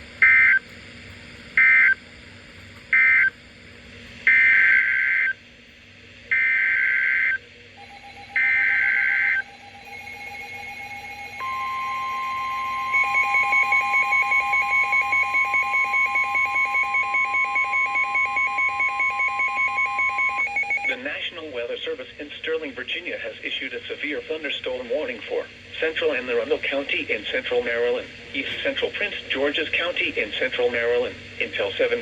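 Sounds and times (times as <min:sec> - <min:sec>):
steady warning alarm tone: 0:04.3 - 0:05.4, 0:06.3 - 0:21.0
fast pulsing beep alarm: 0:06.4 - 0:21.0
warbling digital data tones: 0:07.8 - 0:21.0.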